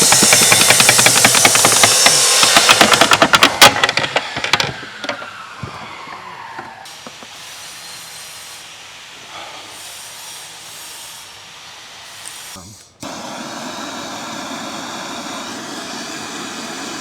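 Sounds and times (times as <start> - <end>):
impact wrench rattling: 0.0 - 5.3.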